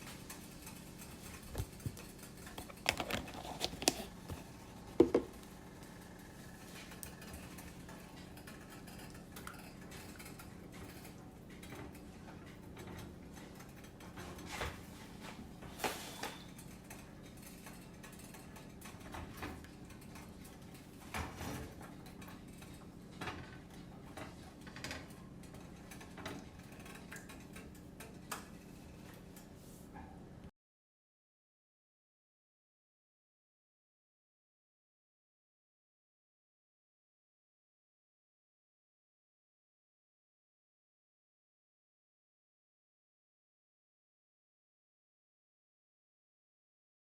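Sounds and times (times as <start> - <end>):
kitchen utensils and dishes clicking: 0.1 - 4.2.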